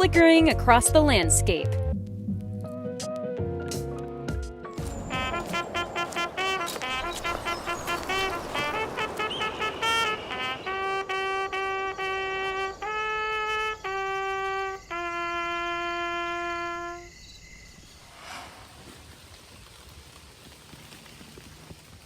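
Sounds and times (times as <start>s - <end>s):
reedy wind instrument melody: 4.8s - 17.2s
faint steady hiss: 4.8s - 22.0s.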